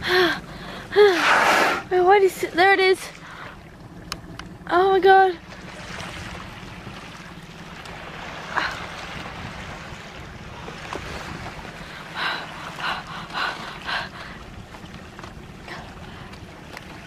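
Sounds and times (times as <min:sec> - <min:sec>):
low steady hum: 0:00.0 - 0:17.0
water slapping boat hull: 0:00.0 - 0:17.0
water splashes: 0:00.0 - 0:17.0
wind on microphone: 0:08.6 - 0:11.8.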